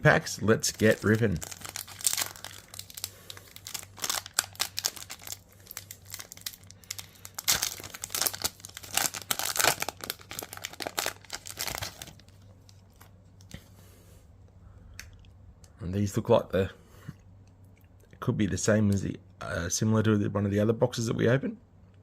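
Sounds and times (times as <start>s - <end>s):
foil pack tearing and crinkling: 0.6s - 12.3s.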